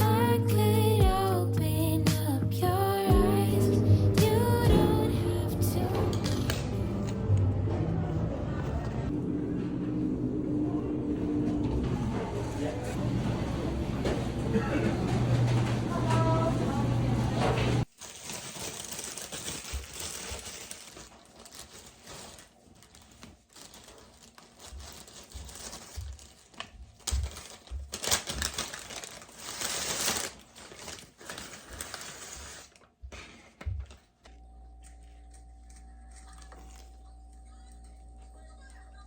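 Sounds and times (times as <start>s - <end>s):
paper rustling: 17.4s - 34.1s, 34.8s - 37.8s.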